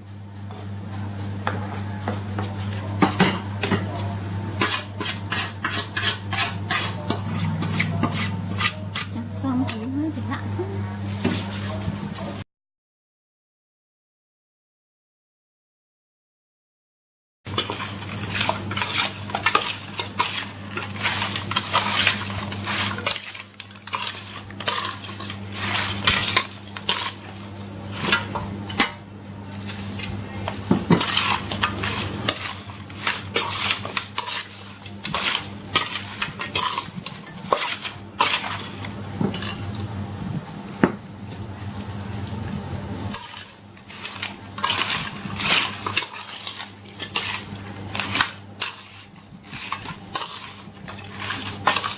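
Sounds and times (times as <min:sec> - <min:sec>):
metal utensil scraping a pan: 0:04.6 - 0:09.9, 0:17.5 - 0:39.8, 0:43.1 - 0:51.9.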